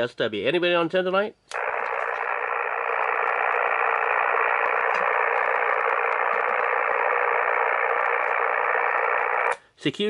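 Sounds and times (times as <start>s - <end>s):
radio static hiss: 1.5s - 9.6s.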